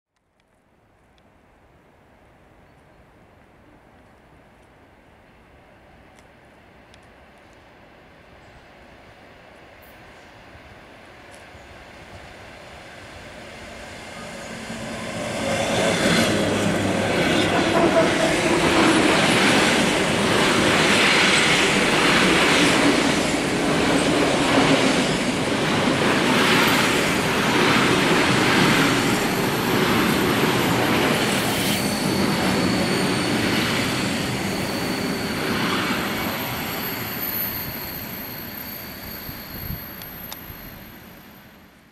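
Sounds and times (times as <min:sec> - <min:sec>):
electric train passing: 0:05.2 - 0:41.9
thin high tone: 0:12.9 - 0:20.2, 0:28.8 - 0:41.8.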